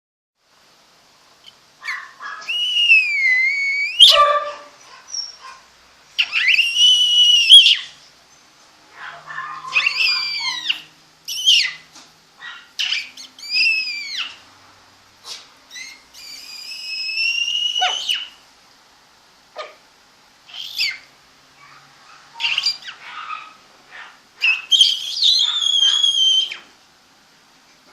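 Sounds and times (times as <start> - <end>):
puppies whining: 1.8 - 5.6, 6.2 - 7.9, 9.0 - 14.4, 15.3 - 18.4, 20.5 - 26.7.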